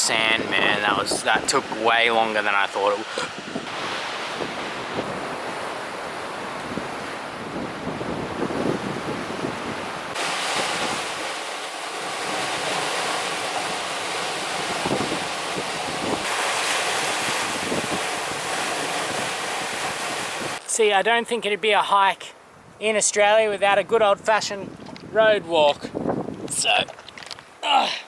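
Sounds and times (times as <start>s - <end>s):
surf breaking on beach: 0.0s - 20.6s
wind buffeting microphone: 0.0s - 20.6s, 23.8s - 27.6s.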